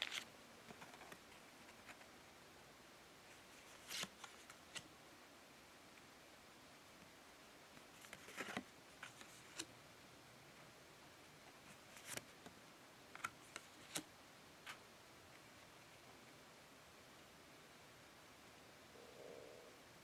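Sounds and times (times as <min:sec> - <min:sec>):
cards clicking and brushing: 0:00.0 - 0:02.1, 0:03.3 - 0:04.9, 0:07.8 - 0:09.7, 0:13.2 - 0:14.1.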